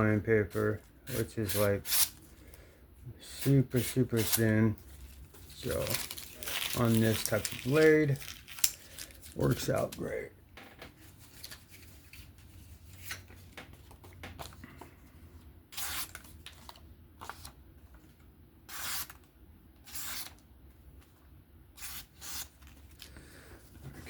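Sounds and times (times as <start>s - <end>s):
knife slicing paper: 15.7s - 16.2s, 18.7s - 19.2s, 19.8s - 20.4s, 21.8s - 22.6s.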